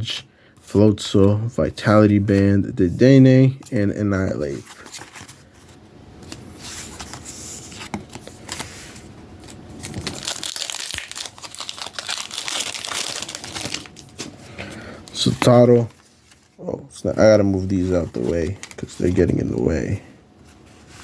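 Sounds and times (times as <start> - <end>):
foil wrapper crinkling and tearing: 9.8 - 14.3, 18.1 - 19.3.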